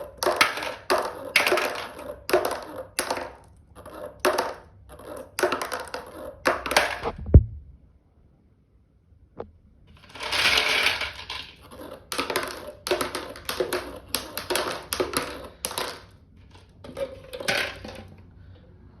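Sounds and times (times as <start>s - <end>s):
marbles rattling down track: 0.0s - 7.0s, 10.1s - 16.1s.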